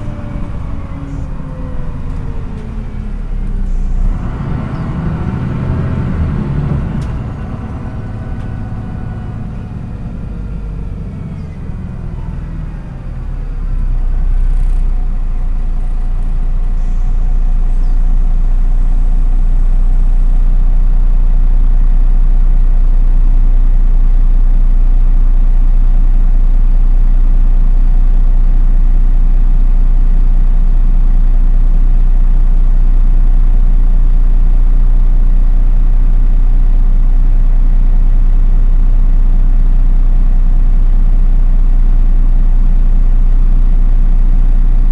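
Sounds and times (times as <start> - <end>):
road noise: 0.0 - 21.4
bus diesel engine drone: 0.0 - 44.9.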